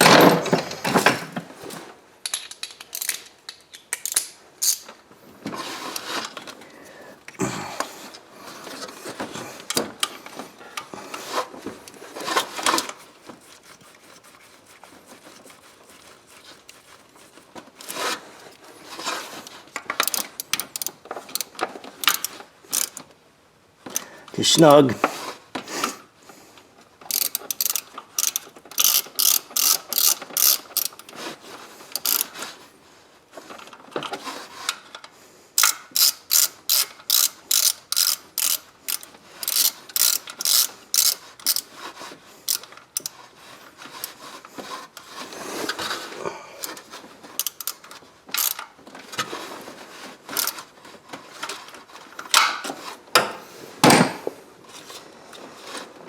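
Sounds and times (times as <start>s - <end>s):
ratchet wrench clicking: 3.9s - 4.8s, 20.0s - 23.0s, 27.1s - 31.0s, 32.0s - 32.3s, 35.6s - 41.7s, 47.4s - 47.8s, 48.4s - 48.6s.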